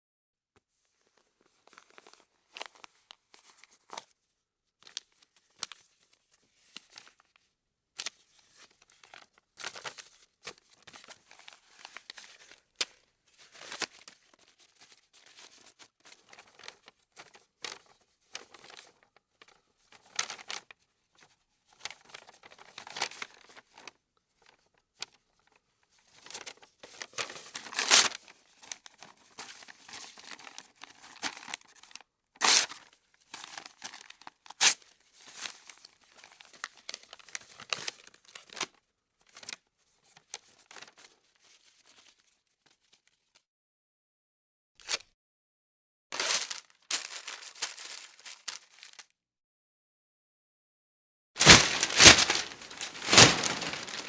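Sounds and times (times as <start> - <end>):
material crumpling and tearing: 51.4 - 54.0.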